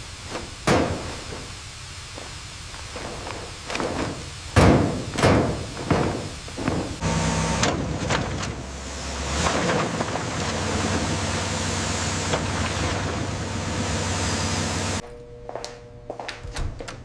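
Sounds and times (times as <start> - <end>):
low mechanical rumble: 0.0 - 16.1
heavy impacts: 2.2 - 15.0.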